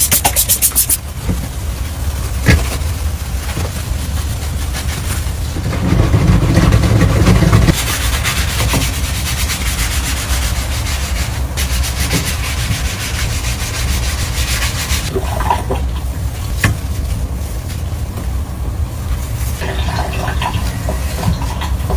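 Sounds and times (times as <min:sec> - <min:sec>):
hard scrubbing on a surface: 0:00.0 - 0:21.9.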